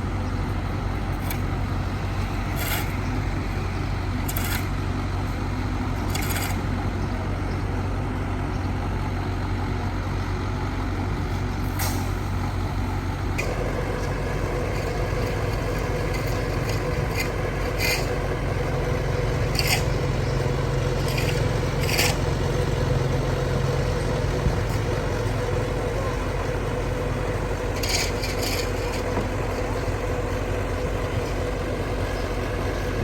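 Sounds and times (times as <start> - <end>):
excavator diesel engine running: 0.0 - 33.0
digging scraping and knocking: 2.2 - 3.2, 4.2 - 4.9, 6.0 - 6.7, 13.4 - 23.2, 27.1 - 29.8.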